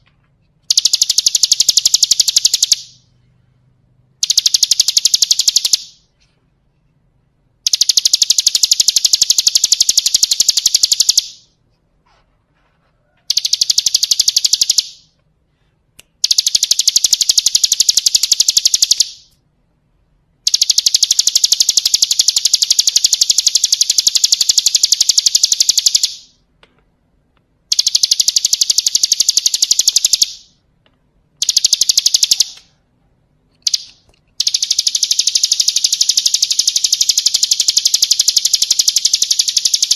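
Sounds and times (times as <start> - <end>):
bird singing rattling trill: 0.7 - 3.1, 4.2 - 6.1, 7.6 - 11.5, 13.3 - 15.1, 16.2 - 19.3, 20.4 - 26.4, 27.7 - 30.6, 31.4 - 32.6, 33.6 - 39.9.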